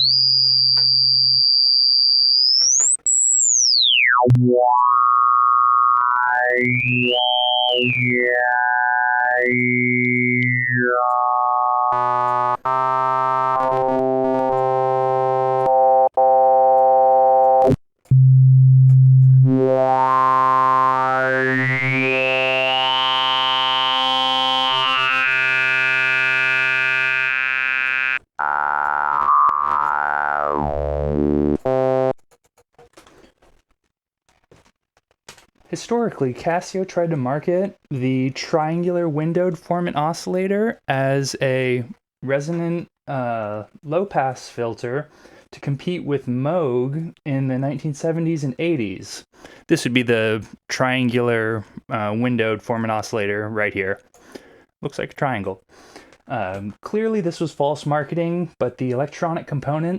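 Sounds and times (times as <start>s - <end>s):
synthesizer tones with sweeping resonance: 2.4s - 32.2s.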